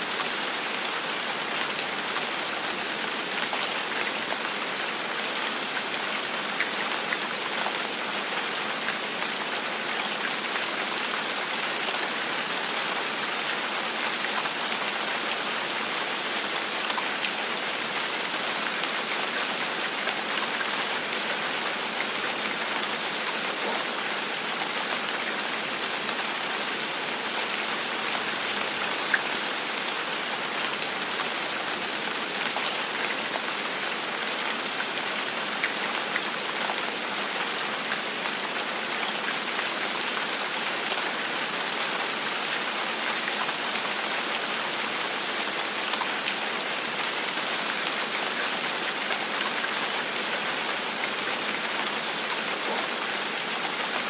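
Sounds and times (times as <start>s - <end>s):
gentle rain falling: 0.0s - 54.0s.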